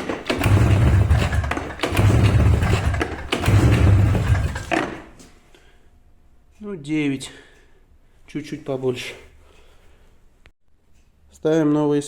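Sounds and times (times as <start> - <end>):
snowmobile engine cranking over: 0.0 - 5.1.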